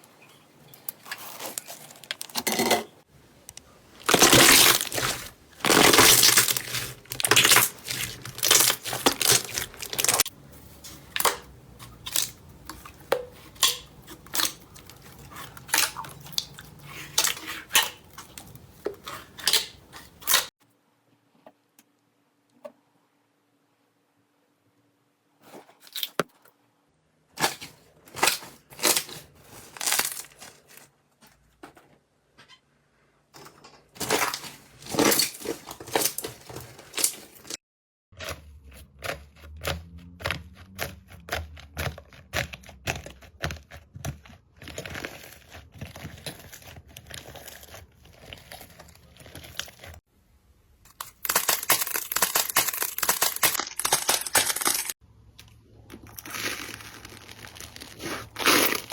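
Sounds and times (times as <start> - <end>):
slime crackling and popping: 4.0 - 10.3, 50.9 - 54.9, 56.0 - 58.9.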